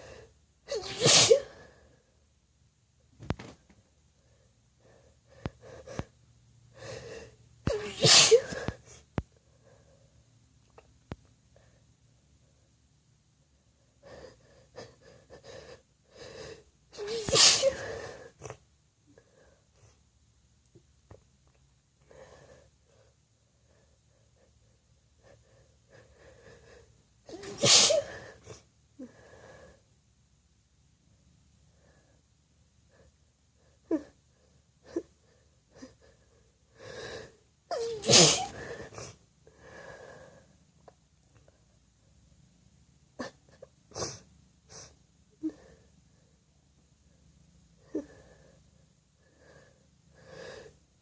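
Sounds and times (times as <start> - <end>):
woman sneezing: 0.7 - 1.5, 7.7 - 8.7, 17.0 - 18.0, 27.3 - 28.3, 37.7 - 38.7.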